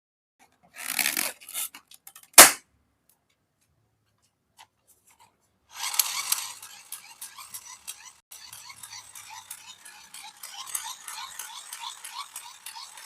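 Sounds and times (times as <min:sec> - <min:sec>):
balloon popping: 0:02.4 - 0:02.6.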